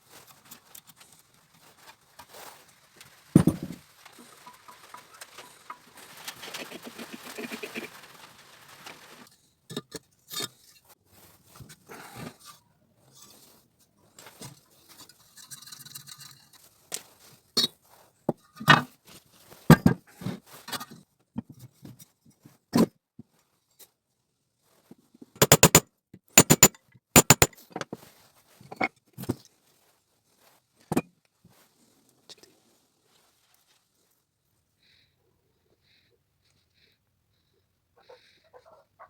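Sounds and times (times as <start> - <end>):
tools knocking and scraping parts: 3.4 - 3.8, 25.4 - 25.8, 26.4 - 28.0.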